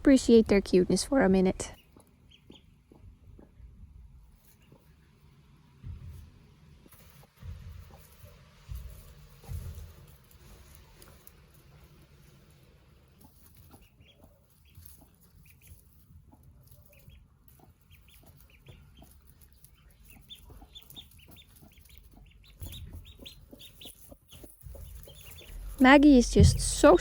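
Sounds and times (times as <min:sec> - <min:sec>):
ducklings peeping: 0:00.2 - 0:05.0, 0:06.8 - 0:27.0
hen clucking softly: 0:13.2 - 0:25.8.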